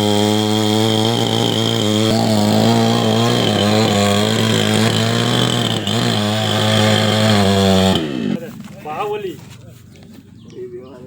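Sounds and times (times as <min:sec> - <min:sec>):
chainsaw cutting wood: 0:00.0 - 0:08.4.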